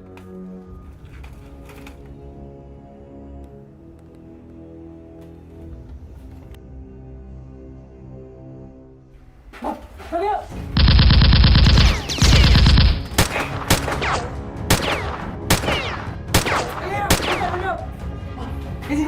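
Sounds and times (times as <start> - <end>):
automatic gunfire: 10.8 - 17.6
single gunshots: 10.8 - 17.6.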